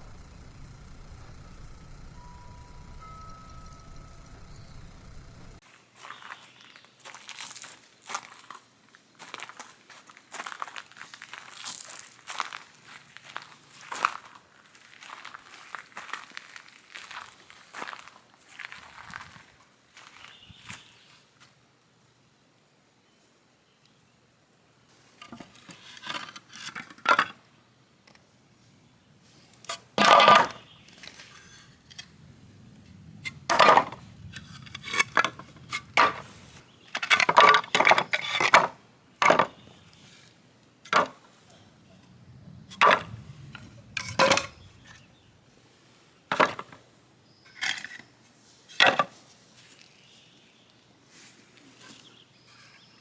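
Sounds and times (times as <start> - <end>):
wood and tools knocking: 36.0 - 36.3.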